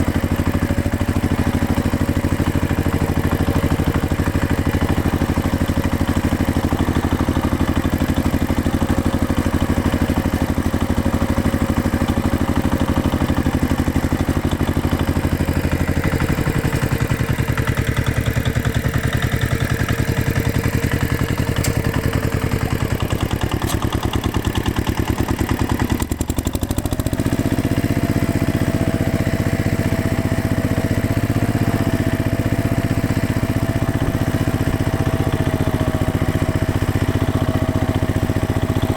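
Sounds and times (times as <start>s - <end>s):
tractor engine running: 0.0s - 38.9s.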